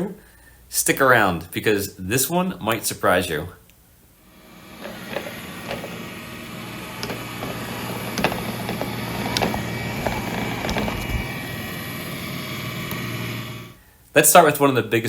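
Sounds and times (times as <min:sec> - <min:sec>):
robot vacuum motor whir: 0:04.3 - 0:13.8.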